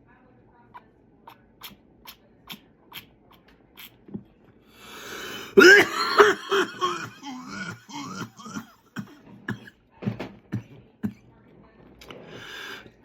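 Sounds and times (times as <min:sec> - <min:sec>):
breathy hiss of breath: 0:04.7 - 0:05.6, 0:12.2 - 0:13.0
person coughing: 0:04.9 - 0:09.7.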